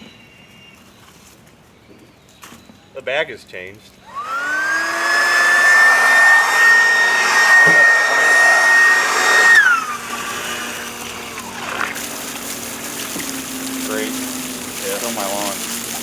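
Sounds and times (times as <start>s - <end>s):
vacuum cleaner motor whining: 4.0s - 16.0s.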